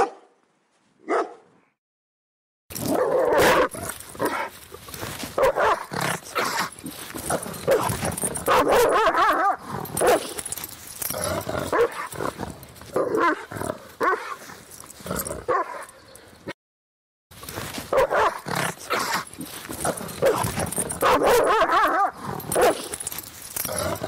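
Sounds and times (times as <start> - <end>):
dogs barking: 0.0 - 0.3, 1.0 - 1.5, 5.4 - 10.7, 11.6 - 12.4, 15.4 - 16.3, 17.9 - 24.0.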